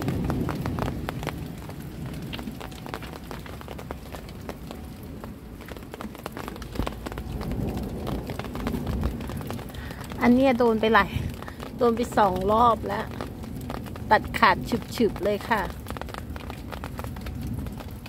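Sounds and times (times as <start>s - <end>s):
rain pattering: 0.0s - 18.0s
steady low rumble: 0.0s - 18.0s.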